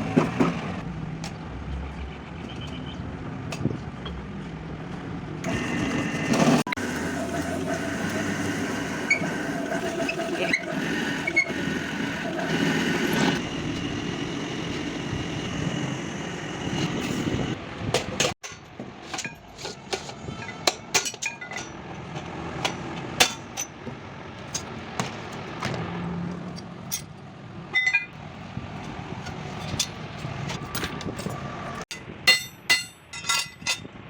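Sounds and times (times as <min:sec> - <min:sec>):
vehicle engine noise: 0:00.0 - 0:32.3.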